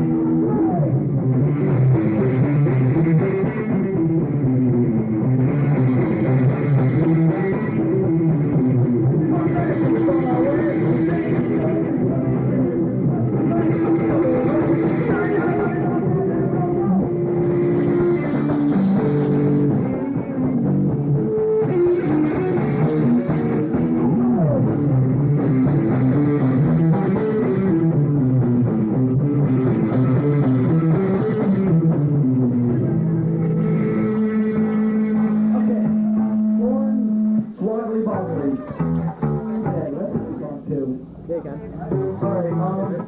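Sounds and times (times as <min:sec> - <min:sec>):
rock band instrumental: 0:00.0 - 0:43.0.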